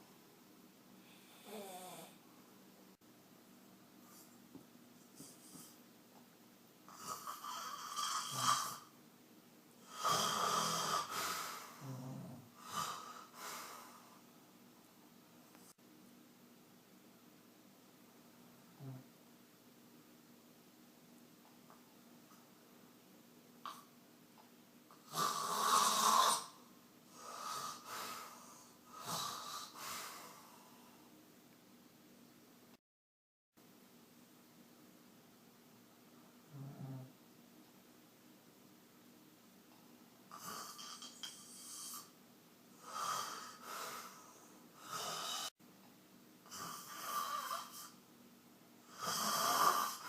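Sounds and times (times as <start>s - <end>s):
man snoring loudly: 6.9s - 8.9s, 9.9s - 13.1s, 25.1s - 26.6s, 44.8s - 45.5s, 48.9s - 50.0s.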